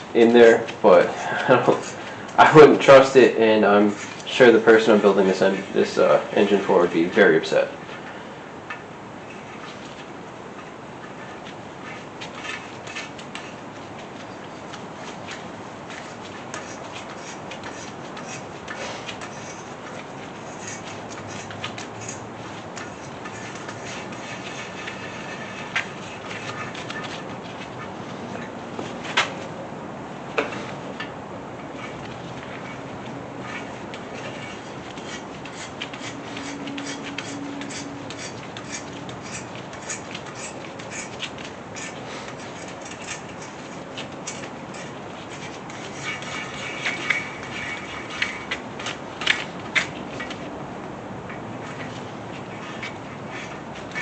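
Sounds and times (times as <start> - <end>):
metallic clicks and scraping: 8.0 - 29.4, 30.4 - 50.5, 51.3 - 54.0.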